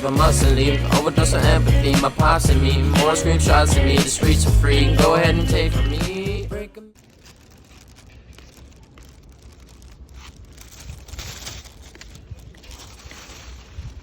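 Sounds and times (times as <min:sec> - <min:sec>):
packaging crinkling: 0:06.9 - 0:14.0.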